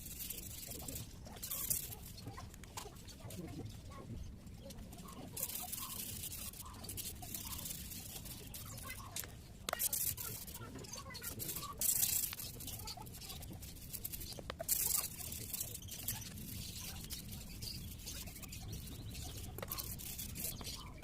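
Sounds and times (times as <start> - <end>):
wire brush scrubbing metal: 5.1 - 21.0.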